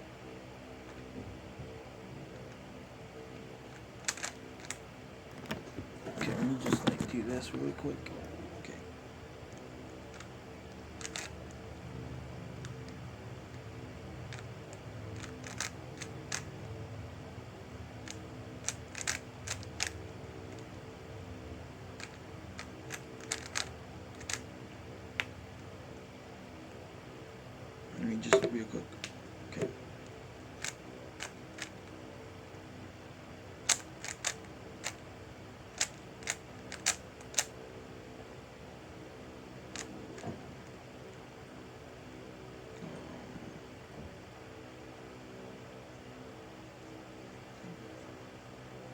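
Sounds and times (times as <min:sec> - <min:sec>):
steady low hum: 0:00.0 - 0:48.9
puzzle cube plastic clicks: 0:03.7 - 0:04.8, 0:09.5 - 0:11.6, 0:14.3 - 0:16.5, 0:18.0 - 0:20.7, 0:21.9 - 0:24.5, 0:30.6 - 0:31.9, 0:33.6 - 0:35.0, 0:35.7 - 0:37.5, 0:39.7 - 0:40.3.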